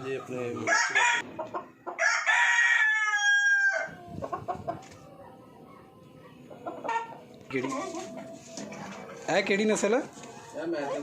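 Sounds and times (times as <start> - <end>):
rooster crowing: 0.7 - 1.2, 1.9 - 4.0.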